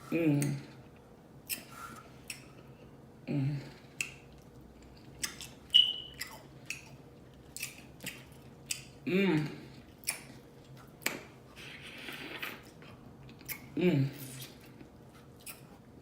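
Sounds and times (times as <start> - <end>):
wet chewing and lip smacks: 0.8 - 2.8, 3.9 - 9.0, 9.8 - 15.9
person humming mm: 3.3 - 3.8.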